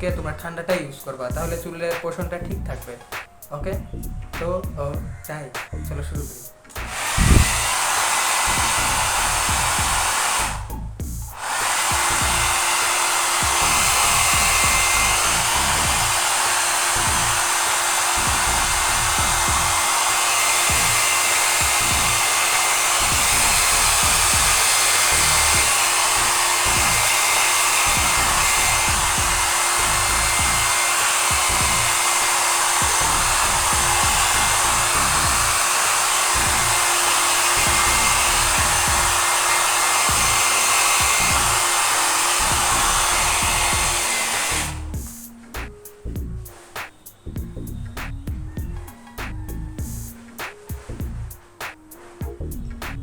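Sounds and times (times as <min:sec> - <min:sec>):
hair dryer blowing: 0:06.7 - 0:45.4.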